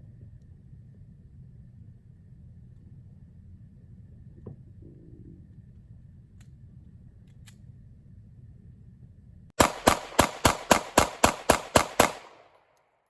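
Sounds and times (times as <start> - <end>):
faint low rumble: 0.0 - 10.2
rapid gunfire: 9.6 - 12.7.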